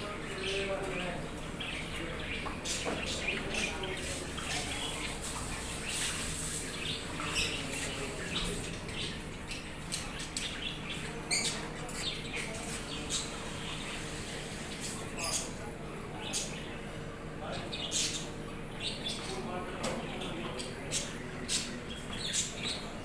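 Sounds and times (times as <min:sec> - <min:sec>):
caged birds chirping: 0:00.0 - 0:23.0.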